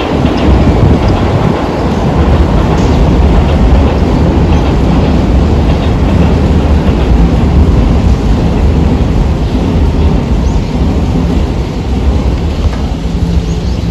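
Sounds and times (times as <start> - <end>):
train wheels rumbling on rails: 0.0 - 13.9.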